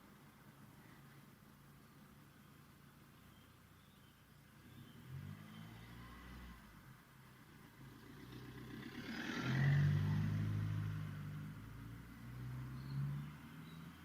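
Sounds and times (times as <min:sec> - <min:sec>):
another vehicle engine: 0:04.6 - 0:14.0
car driving past: 0:04.6 - 0:14.0.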